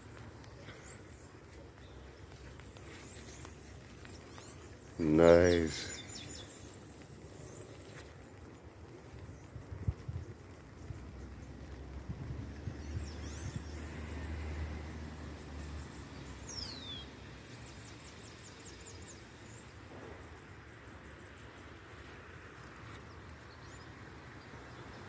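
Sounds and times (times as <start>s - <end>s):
low wind rumble: 0.0s - 15.3s.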